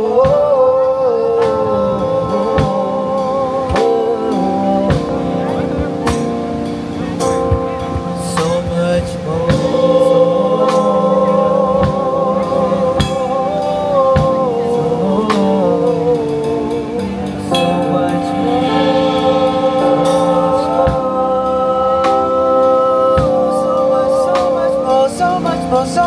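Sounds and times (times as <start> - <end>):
gospel-style singing over chords: 0.0 - 26.0
drum hits: 4.9 - 9.9, 16.7 - 22.2.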